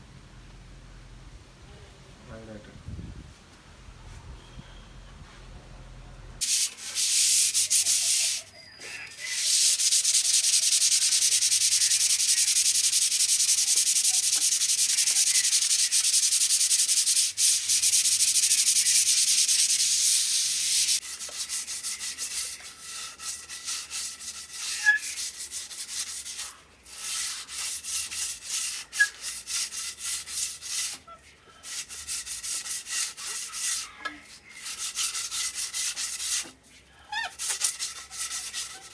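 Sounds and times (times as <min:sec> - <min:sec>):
sanding rasping hiss: 0:06.4 - 0:31.0.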